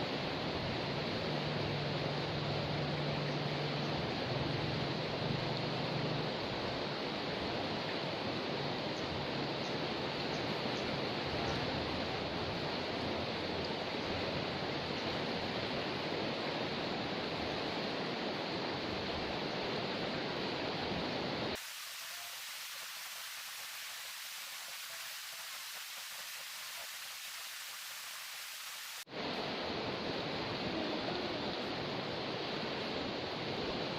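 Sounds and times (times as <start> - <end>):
river rushing: 0.0 - 33.9
thin hiss: 21.5 - 29.1.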